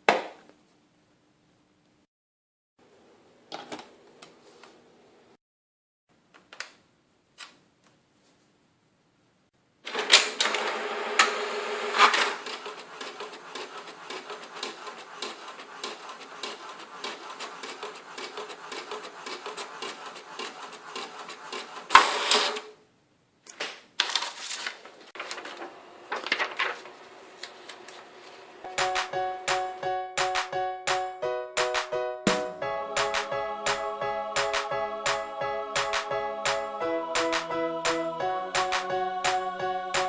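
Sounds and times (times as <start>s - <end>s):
printer motors whirring and clicking: 9.9s - 22.7s.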